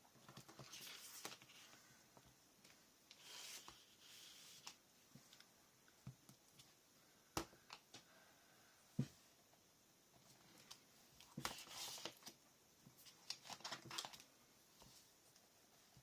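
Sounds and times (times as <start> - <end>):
paper rustle: 0.3 - 1.8, 11.4 - 12.4, 13.0 - 15.0.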